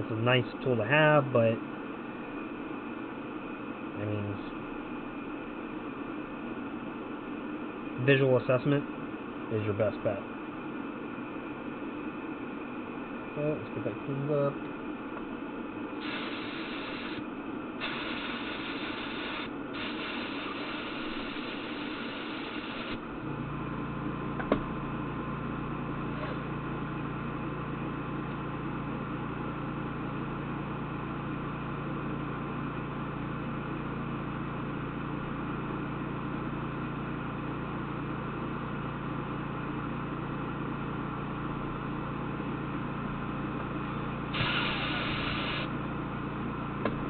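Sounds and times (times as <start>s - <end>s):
electric machine hum: 0.0s - 47.0s
hiss: 16.0s - 17.2s, 17.8s - 23.0s, 44.4s - 45.7s.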